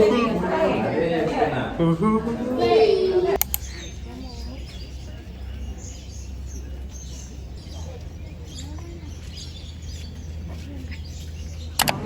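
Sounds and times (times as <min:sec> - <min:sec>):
low outdoor rumble: 0:00.0 - 0:12.0
birds chirping faintly: 0:02.6 - 0:12.0
sharp click: 0:03.4 - 0:03.7, 0:11.8 - 0:12.0.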